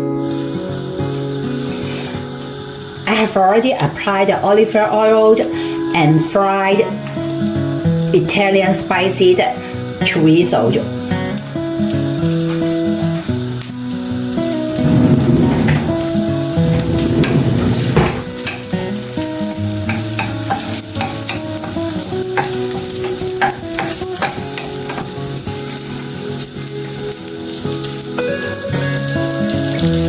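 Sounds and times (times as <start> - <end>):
sausage sizzling in frying pan: 0.0 - 14.9, 16.0 - 30.0
spatula scraping pan: 14.6 - 25.3.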